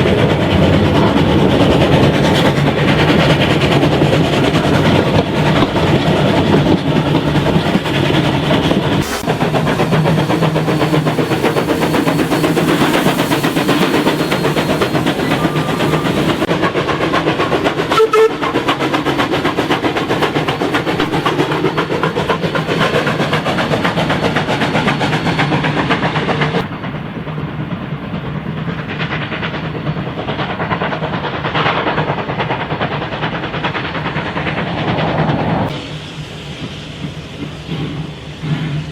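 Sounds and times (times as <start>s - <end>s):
steam train clattering on track: 0.0s - 38.9s
train whistle toot: 9.0s - 16.5s, 17.9s - 18.6s.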